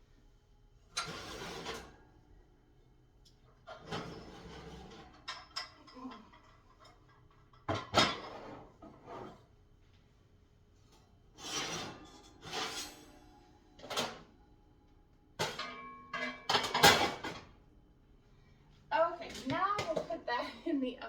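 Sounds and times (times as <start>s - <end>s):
metal scraping on oven rack: 1.0s - 2.0s, 3.8s - 5.3s, 11.4s - 14.2s
pans clicking and clunking: 3.7s - 8.7s, 15.4s - 17.6s, 19.3s - 20.2s.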